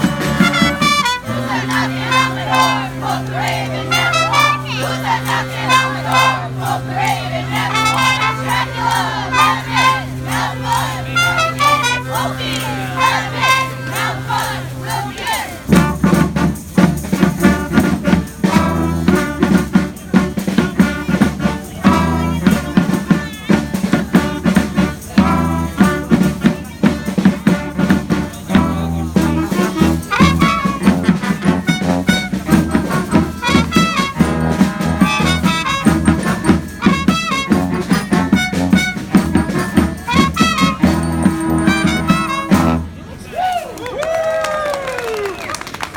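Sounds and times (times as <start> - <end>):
regular drumbeat: 0.0 - 1.3, 15.7 - 42.9
street brass band playing: 0.0 - 43.3.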